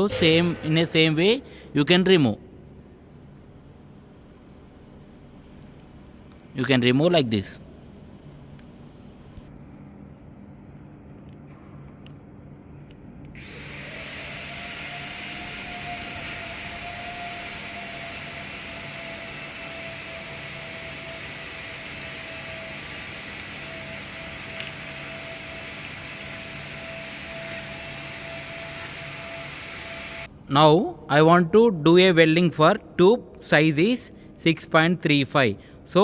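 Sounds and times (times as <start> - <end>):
fan blower rushing with whine: 13.4 - 30.3.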